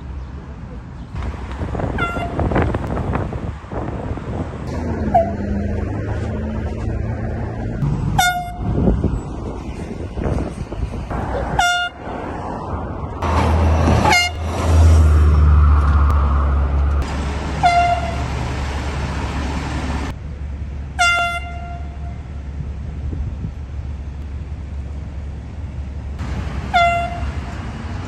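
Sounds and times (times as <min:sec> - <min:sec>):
low vehicle rumble: 0:00.0 - 0:28.0
air horn blasts: 0:01.9 - 0:02.6, 0:05.0 - 0:05.6, 0:08.2 - 0:08.8, 0:11.5 - 0:12.0, 0:14.0 - 0:14.6, 0:17.6 - 0:18.3, 0:21.0 - 0:22.2, 0:26.7 - 0:27.4.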